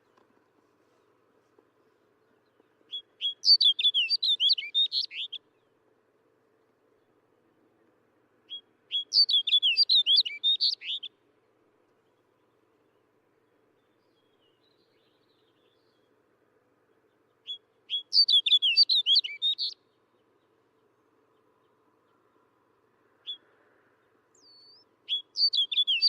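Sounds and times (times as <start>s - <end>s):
bird warbling song: 2.2s - 5.8s, 8.5s - 11.1s, 17.0s - 22.3s, 24.1s - 26.0s.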